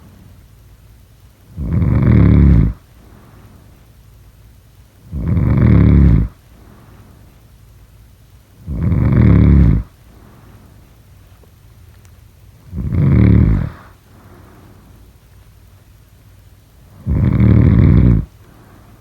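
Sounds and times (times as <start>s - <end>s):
loud snoring: 1.5s - 2.9s, 5.1s - 6.4s, 8.6s - 10.0s, 12.6s - 13.9s, 16.9s - 18.3s
faint breathing: 1.5s - 3.9s, 5.0s - 7.4s, 8.6s - 11.0s, 12.6s - 15.2s, 16.8s - 19.0s.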